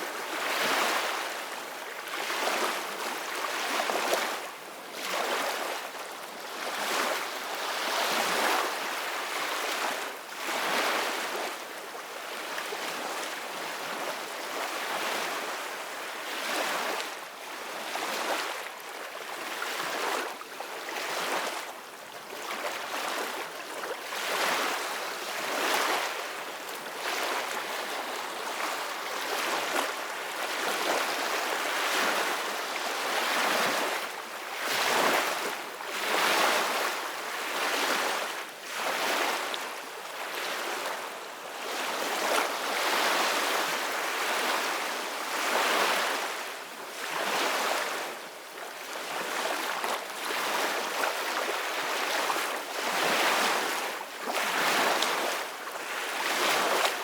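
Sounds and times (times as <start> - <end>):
ocean waves breaking on beach: 22.4 - 57.0.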